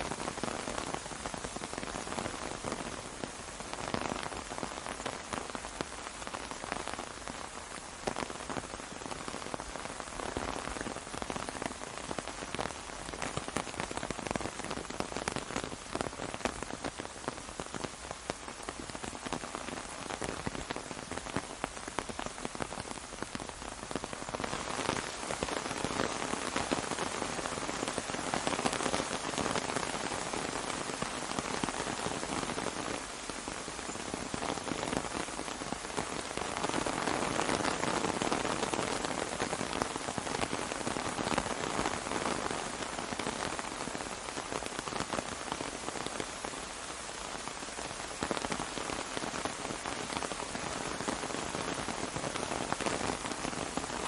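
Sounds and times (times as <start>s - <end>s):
rain on an umbrella: 0.0s - 54.0s.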